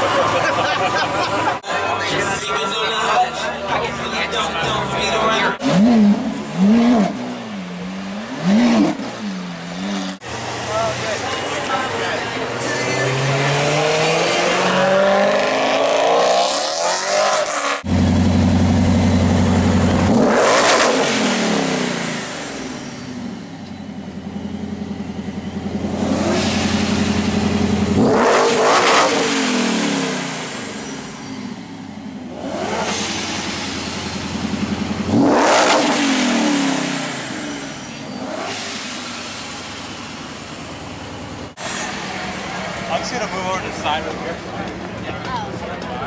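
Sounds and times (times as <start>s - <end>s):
cars accelerating past: 3.8s - 18.2s, 19.9s - 23.1s, 25.9s - 31.6s, 32.3s - 39.8s.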